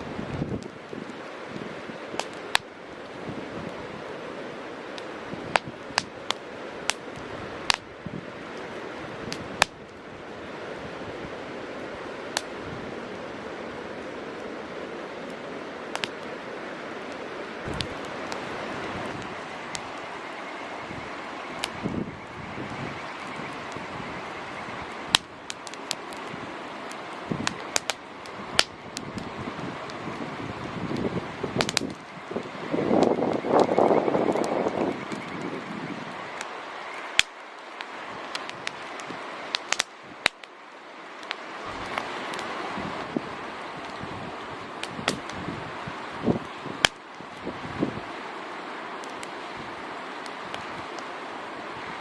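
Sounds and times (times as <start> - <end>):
burning wood crackling and popping: 0.0 - 52.0
wind and flame rushing: 0.0 - 52.0
wind rushing: 17.6 - 25.2.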